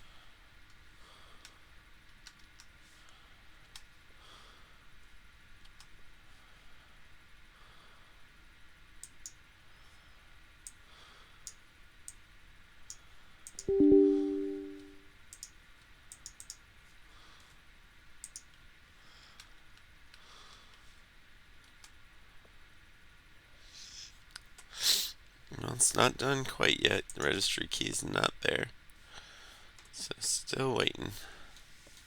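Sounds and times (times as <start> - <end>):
loud pitched tone of several notes: 13.7 - 15.0
computer mouse clicks: 16.1 - 16.6, 18.2 - 18.6.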